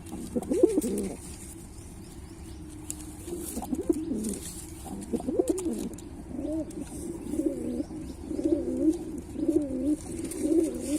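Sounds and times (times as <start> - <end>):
pigeon cooing: 0.1 - 1.3, 3.3 - 10.9.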